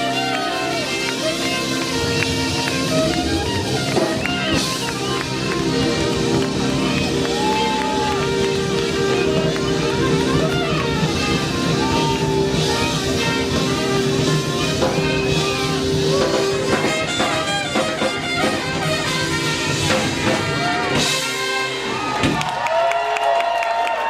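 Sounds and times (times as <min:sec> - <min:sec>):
electric guitar: 0:00.0 - 0:22.4
drum kit: 0:00.0 - 0:23.8
live band playing: 0:00.0 - 0:24.0.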